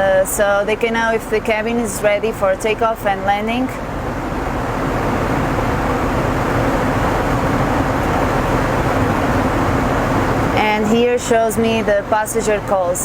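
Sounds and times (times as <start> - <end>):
aircraft cabin air rushing: 3.7 - 11.4.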